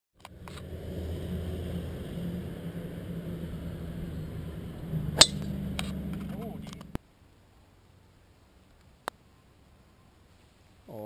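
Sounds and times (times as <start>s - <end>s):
low engine hum: 0.2s - 7.0s
golf club striking ball: 5.1s - 6.9s.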